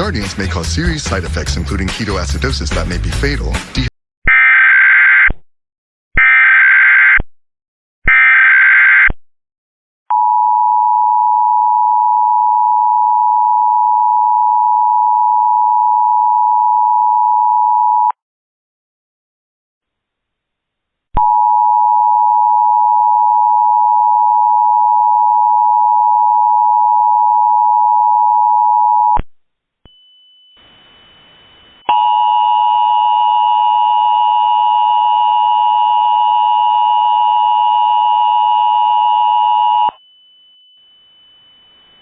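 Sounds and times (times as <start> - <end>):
thin high whine: 29.9 - 33.4, 39.4 - 42.0.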